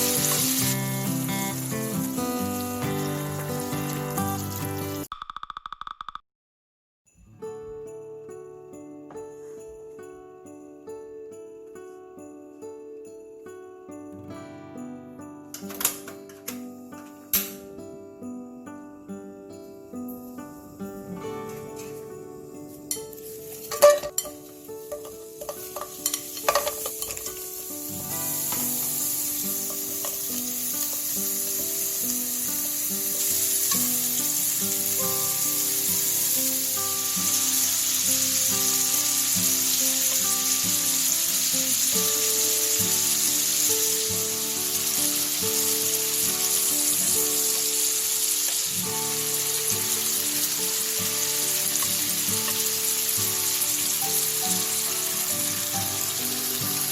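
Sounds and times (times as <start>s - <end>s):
meat sizzling in a pan: 0.0s - 5.1s, 23.1s - 56.9s.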